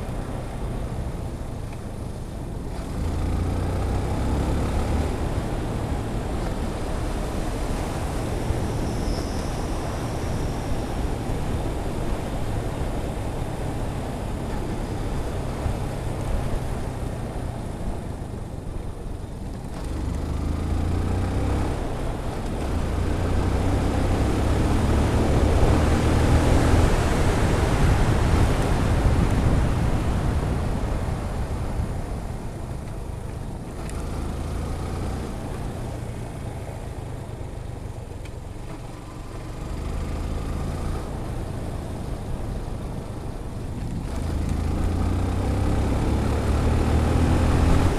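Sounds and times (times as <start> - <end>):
motorcycle engine hum: 0.0 - 47.9
wind rushing over microphone: 21.3 - 34.2.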